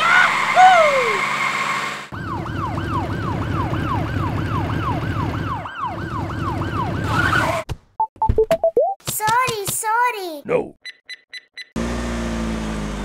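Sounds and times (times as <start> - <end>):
siren with falling tone: 2.1 - 7.6.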